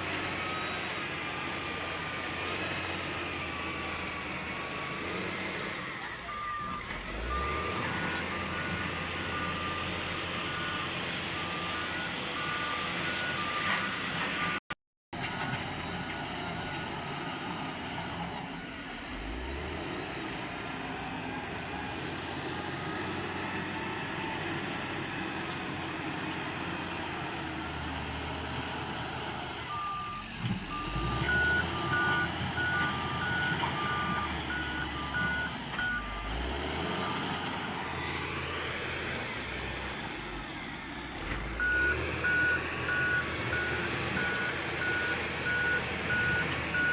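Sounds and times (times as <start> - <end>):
diesel engine working under load: 0.0 - 46.9
two-tone reversing alarm beeping: 29.7 - 36.3, 41.6 - 46.9.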